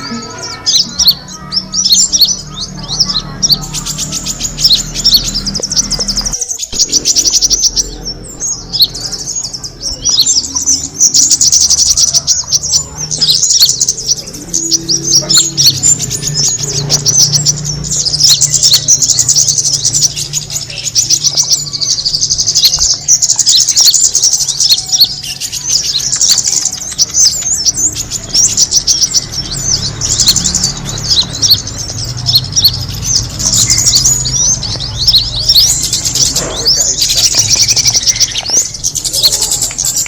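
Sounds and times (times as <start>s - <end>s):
songbirds chirping and twittering: 0.0s - 40.0s.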